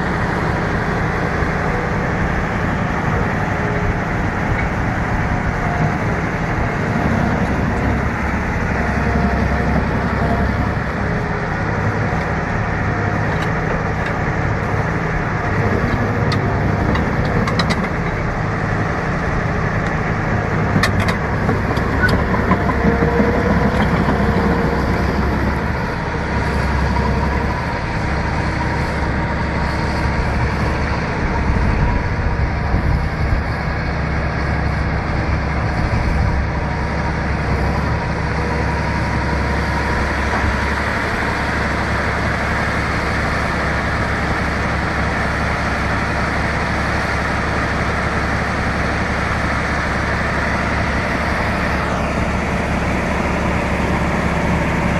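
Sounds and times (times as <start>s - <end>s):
bulldozer diesel engine running: 0.0s - 54.9s.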